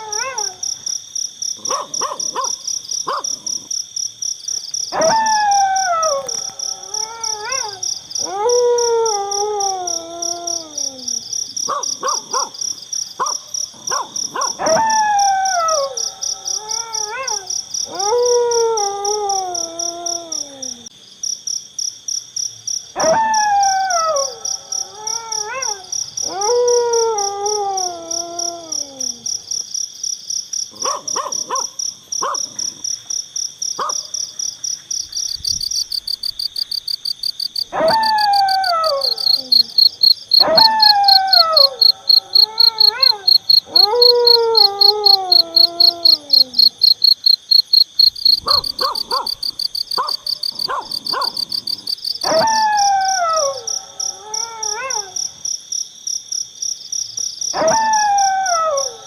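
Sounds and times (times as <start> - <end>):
chorus of night insects: 0.0 - 59.0
falling howl-like cries: 5.0 - 11.2, 14.6 - 20.8.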